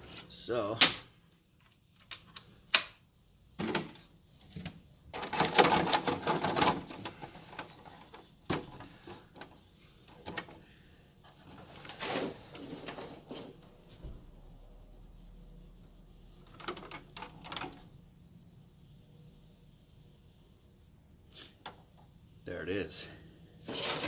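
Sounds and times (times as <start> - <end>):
plastic parts rattling and scraping: 3.6 - 13.7, 16.4 - 18.0, 23.6 - 24.0.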